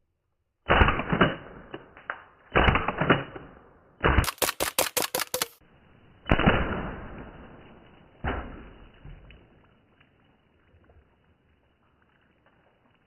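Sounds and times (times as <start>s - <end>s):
pellet gun shots: 0.7s - 5.6s.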